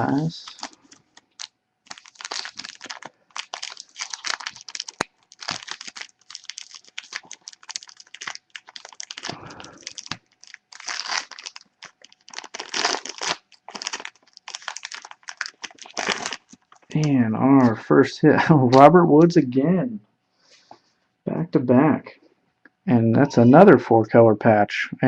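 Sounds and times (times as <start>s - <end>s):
wrapper crinkling and tearing: 0.0s - 17.7s.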